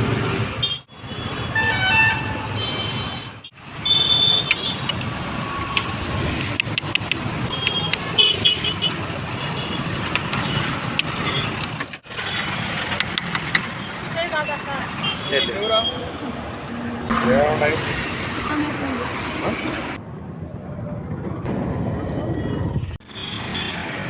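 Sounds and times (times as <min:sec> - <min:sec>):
vehicles passing: 0:00.0 - 0:24.0
car horns tooting: 0:00.6 - 0:06.0, 0:07.4 - 0:12.6, 0:14.0 - 0:16.4.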